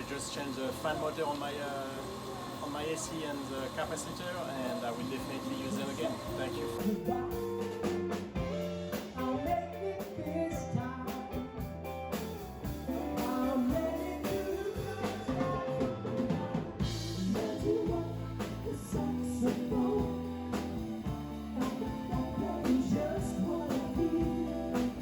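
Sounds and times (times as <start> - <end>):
rock or blues music with singing: 6.2 - 25.0.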